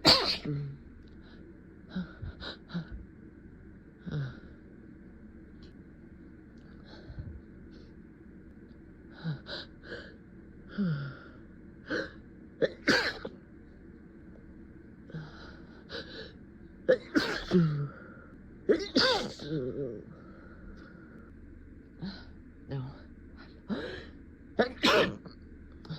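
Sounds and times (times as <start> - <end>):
person sneezing: 0.0 - 0.6, 18.7 - 19.6, 24.7 - 25.2.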